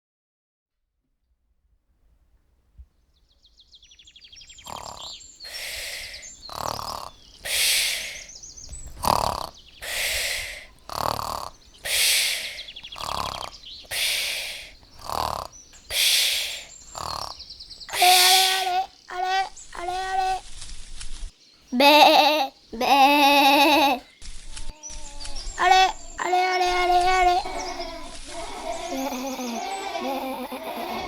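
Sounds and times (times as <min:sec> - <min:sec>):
small birds chirping: 0:03.0 - 0:31.0
snoring: 0:04.6 - 0:20.4, 0:24.7 - 0:31.0.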